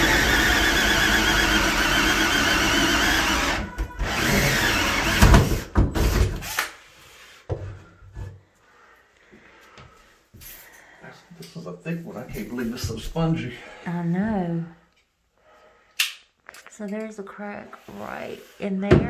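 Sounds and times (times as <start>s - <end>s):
power drill whining: 0.0s - 6.5s.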